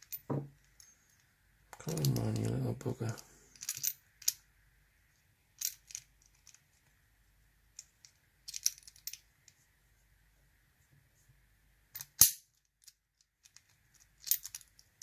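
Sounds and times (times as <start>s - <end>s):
padlock parts clicking and clinking: 0.0s - 4.4s, 5.6s - 6.6s, 7.8s - 9.3s, 11.9s - 15.0s.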